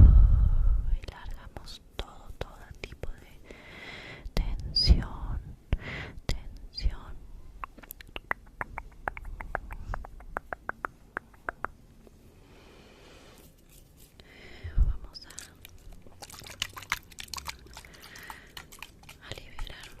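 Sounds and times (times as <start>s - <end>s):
soft breath: 0.0s - 1.0s, 3.4s - 4.4s, 5.7s - 6.2s, 12.2s - 15.6s, 17.8s - 18.7s
wet mouth clicks: 7.6s - 11.8s, 15.1s - 20.0s.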